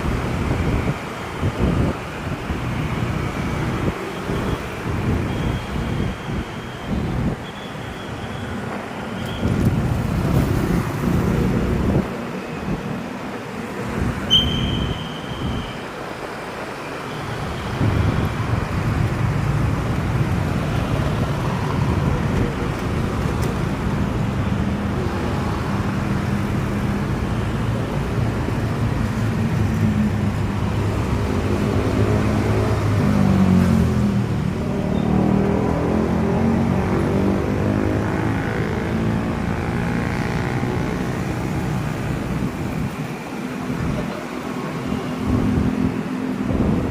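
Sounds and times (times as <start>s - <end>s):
traffic rumble: 0.0s - 46.9s
short high beep: 14.3s - 15.8s.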